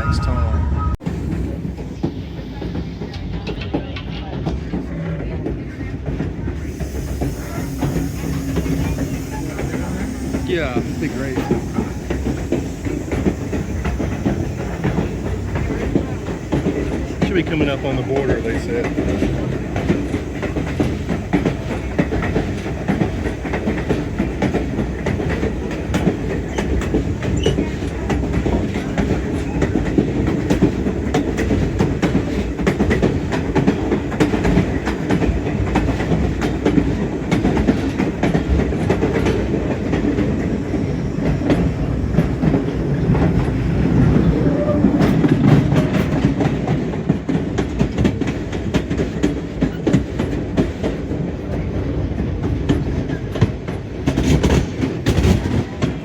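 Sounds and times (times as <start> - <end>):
train cars rumbling: 0.0 - 56.0.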